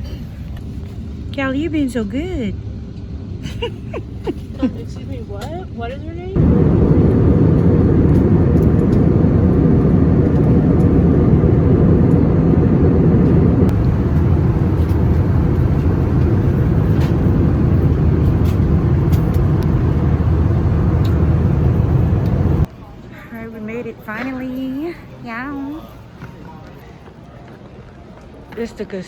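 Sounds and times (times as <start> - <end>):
vehicle cabin rumble: 6.4 - 22.7.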